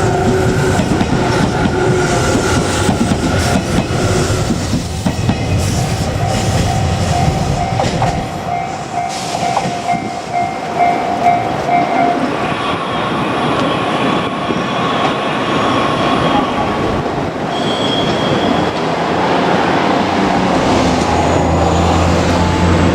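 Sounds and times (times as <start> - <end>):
train wheels clattering on rails: 0.0 - 12.4.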